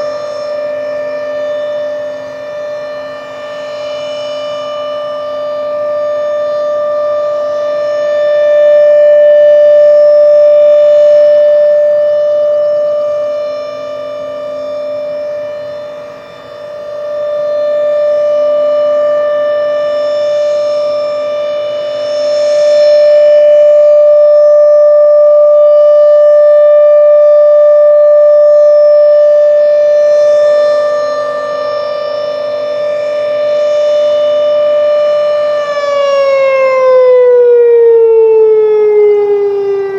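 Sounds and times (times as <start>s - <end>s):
rotating warning siren: 0.0s - 39.9s.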